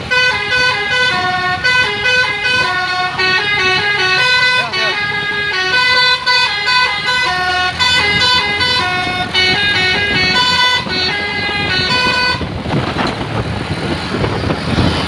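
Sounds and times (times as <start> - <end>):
musical bus horn playing: 0.0 - 12.6
bus engine running: 0.0 - 15.0
road noise: 0.0 - 15.0.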